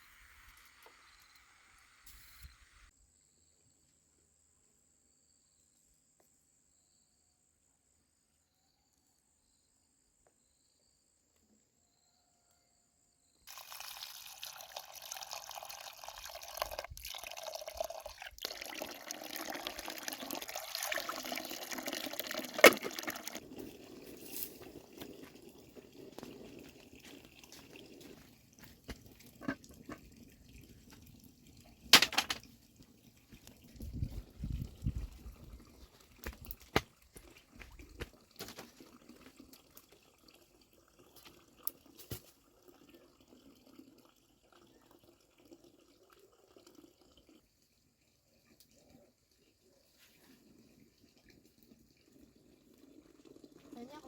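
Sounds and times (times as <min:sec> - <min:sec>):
water running and splashing: 0:13.5 - 0:47.4.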